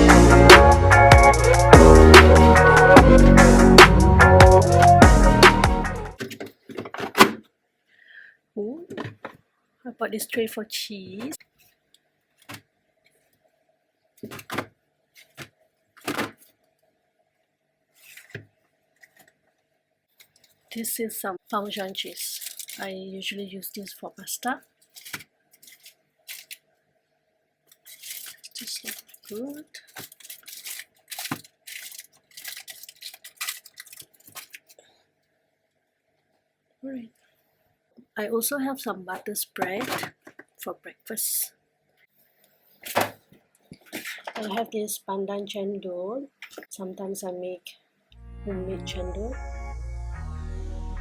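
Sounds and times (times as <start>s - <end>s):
plastic packaging crinkling: 21.6s - 23.0s, 24.6s - 26.7s, 27.7s - 34.8s.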